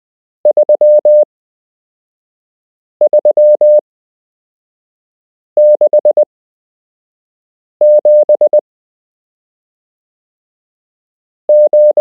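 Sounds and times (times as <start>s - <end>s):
morse code beeps: 0.5s - 1.2s, 3.1s - 3.8s, 5.6s - 6.3s, 7.8s - 8.6s, 11.5s - 12.0s.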